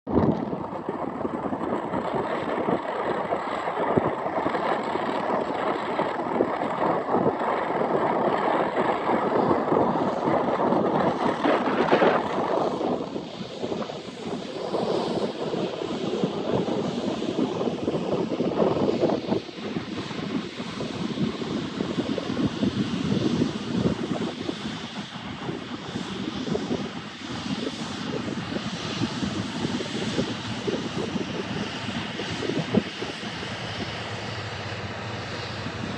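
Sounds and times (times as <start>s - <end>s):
wind buffeting microphone: 0.1s - 35.9s
combine harvester running: 29.6s - 35.9s.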